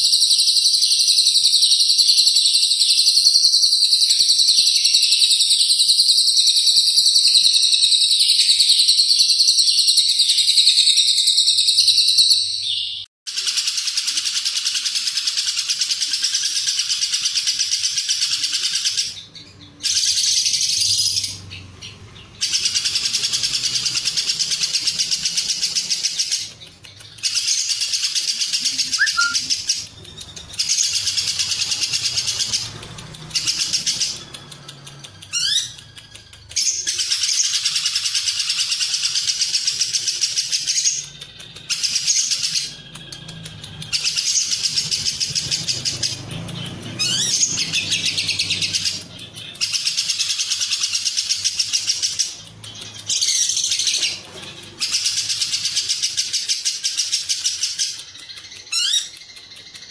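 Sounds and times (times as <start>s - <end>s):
lovebird chattering trills: 15.7s - 59.9s.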